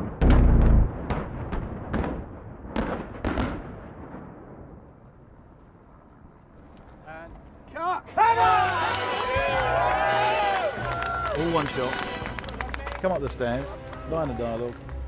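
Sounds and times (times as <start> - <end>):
explosion blasts: 0.0 - 4.9
explosion rumble: 0.0 - 4.9.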